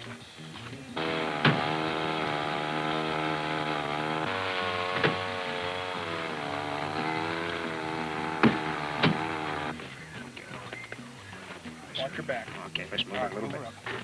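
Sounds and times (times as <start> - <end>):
rescue tool motor running: 1.0 - 9.8.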